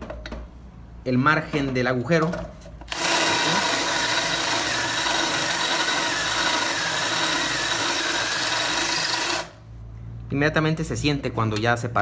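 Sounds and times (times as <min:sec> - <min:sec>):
electric drill cutting metal: 0:02.9 - 0:09.6.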